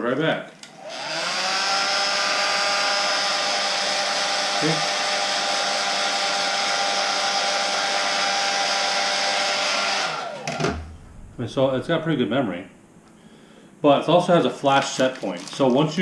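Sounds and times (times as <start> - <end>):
heat gun blowing: 0.7 - 11.0.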